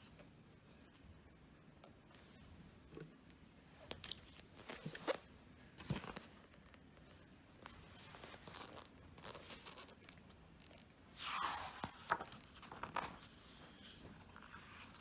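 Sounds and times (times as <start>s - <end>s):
album pages turning: 3.9s - 6.8s, 7.6s - 15.0s.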